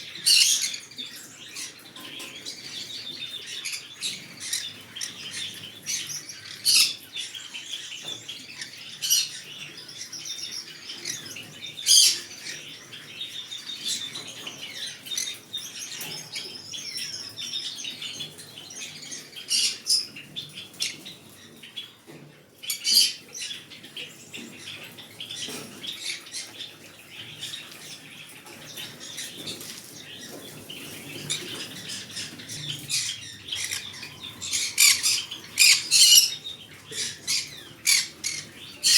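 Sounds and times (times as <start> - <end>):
parrot chirping and chattering: 0.2 - 1.8, 30.6 - 38.9
sharp loud bird calls: 30.3 - 38.9.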